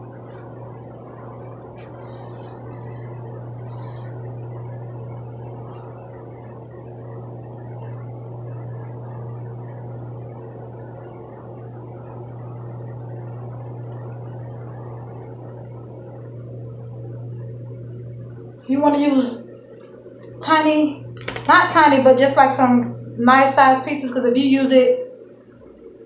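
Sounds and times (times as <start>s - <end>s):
low electrical hum: 0.0s - 26.0s.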